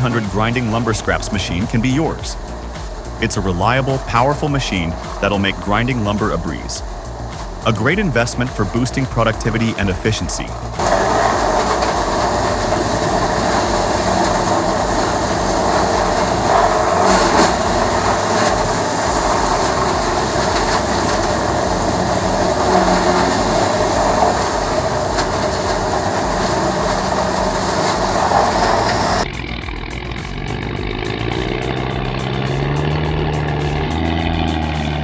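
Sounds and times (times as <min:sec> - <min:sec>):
faint high whine: 0:00.0 - 0:35.0
grinder grinding wood: 0:00.0 - 0:35.0.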